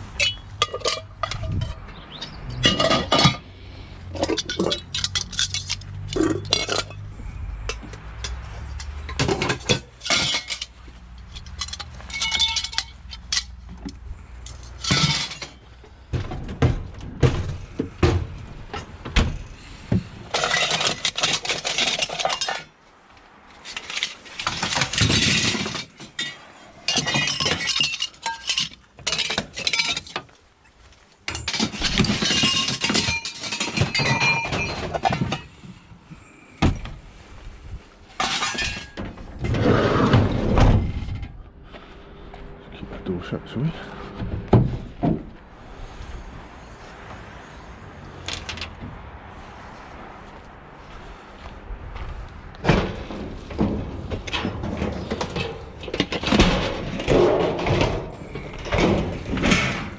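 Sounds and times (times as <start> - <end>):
scrap metal clanking: 0.0 - 22.8, 23.5 - 42.0, 50.8 - 59.9
metal rattling and scraping: 0.0 - 22.9, 23.5 - 50.0, 50.8 - 59.9.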